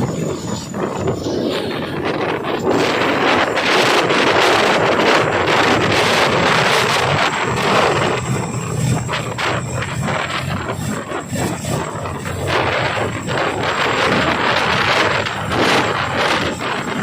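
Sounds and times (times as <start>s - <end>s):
helicopter rotor and engine noise: 0.0s - 17.0s
rotor wash buffeting microphone: 0.0s - 17.0s.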